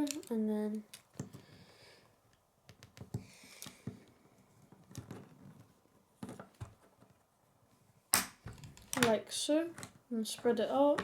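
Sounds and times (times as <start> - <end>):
plastic pieces clicking together: 0.0 - 1.4.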